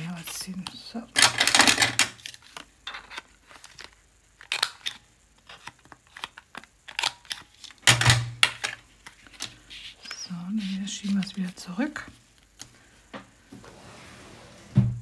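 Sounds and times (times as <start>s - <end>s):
paper rustling: 8.6s - 12.7s.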